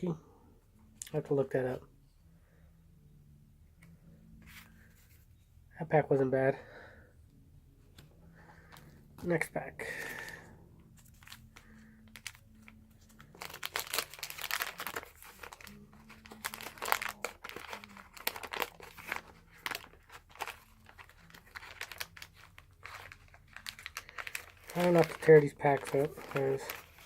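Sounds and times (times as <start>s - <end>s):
paper wrapper crinkling: 8.6s - 27.0s.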